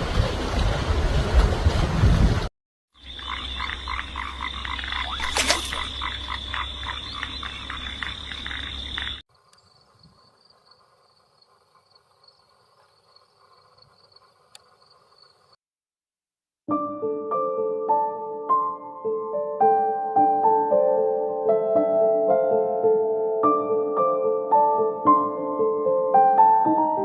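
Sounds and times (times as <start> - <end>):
rapid rhythmic animal calls: 3.0 - 15.6.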